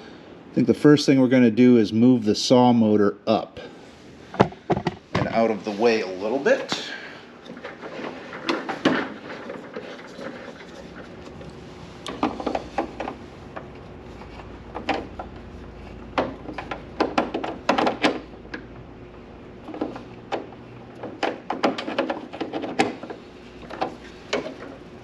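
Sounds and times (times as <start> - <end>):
metal motor clunking and rattling: 4.3 - 5.5, 7.4 - 25.0.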